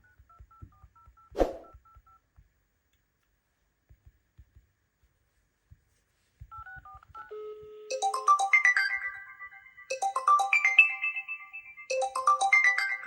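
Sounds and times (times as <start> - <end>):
smartphone melodic ringtone: 7.9 - 13.0.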